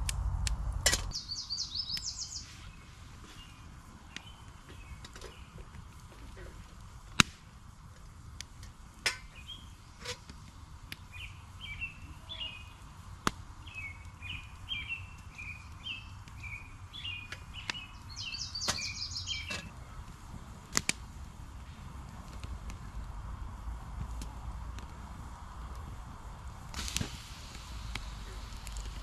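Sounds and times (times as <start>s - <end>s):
campfire crackling and popping: 0.0s - 29.0s
songbird chirping: 1.1s - 5.7s, 9.2s - 10.2s, 11.0s - 20.0s.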